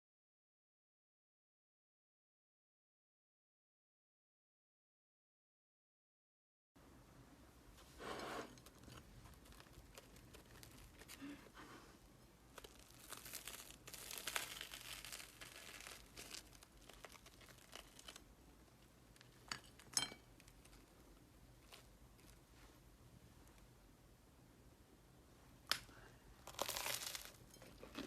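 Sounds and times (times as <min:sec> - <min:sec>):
packaging crinkling: 0:08.6 - 0:11.3, 0:12.6 - 0:18.3, 0:26.5 - 0:27.5.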